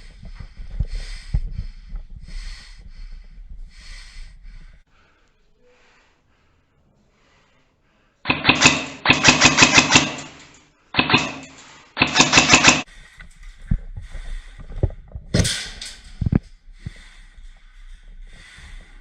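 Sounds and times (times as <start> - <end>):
airsoft gun firing bursts: 8.3 - 10.4, 11.0 - 12.9
sharp knocks: 8.3 - 12.9.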